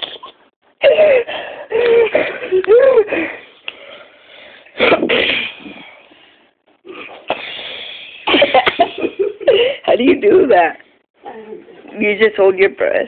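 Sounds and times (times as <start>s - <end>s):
person stifled sneeze: 4.8s - 5.9s
long breathy hiss: 7.3s - 8.3s.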